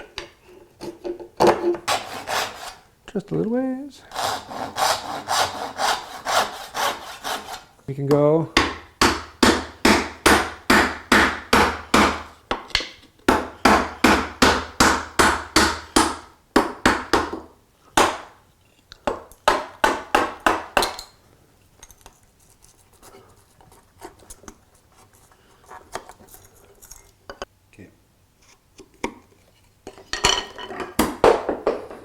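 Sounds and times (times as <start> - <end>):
hand saw cutting wood: 1.8 - 2.8, 4.1 - 7.7.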